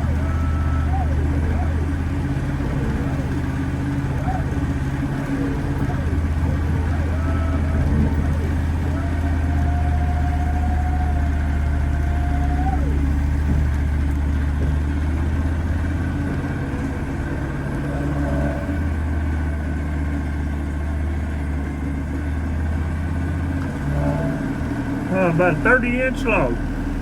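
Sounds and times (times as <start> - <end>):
sawmill engine running: 0.0 - 27.0.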